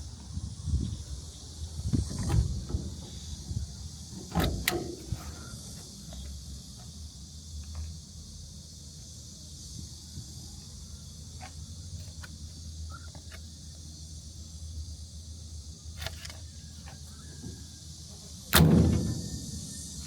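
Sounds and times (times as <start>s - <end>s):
diesel generator humming: 0.0s - 7.1s, 16.5s - 20.0s
loud thump: 18.6s - 20.0s.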